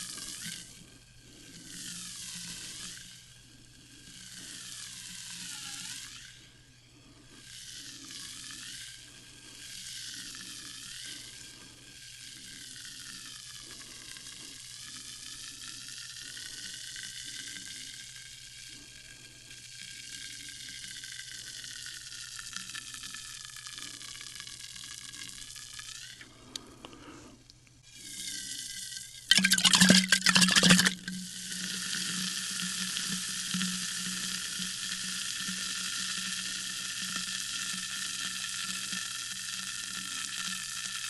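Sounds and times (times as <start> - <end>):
sparkling water fizzing: 29.3 - 31.1.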